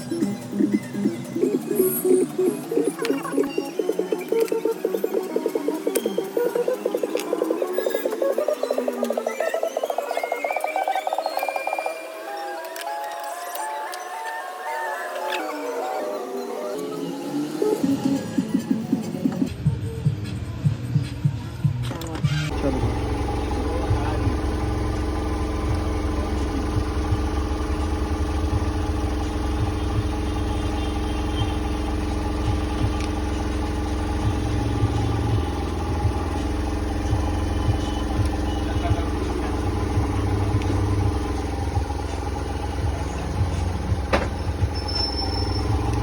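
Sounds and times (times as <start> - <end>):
mechanical hum: 22.5 - 46.0.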